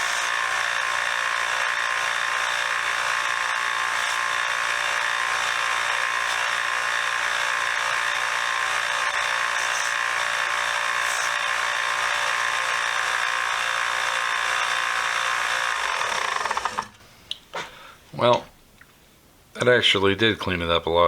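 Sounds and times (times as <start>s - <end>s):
belt sander whining: 0.0s - 17.7s.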